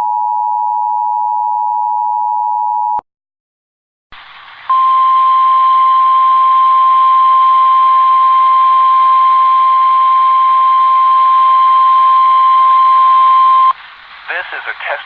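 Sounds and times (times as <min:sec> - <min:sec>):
radio hiss: 0:13.7 - 0:15.0.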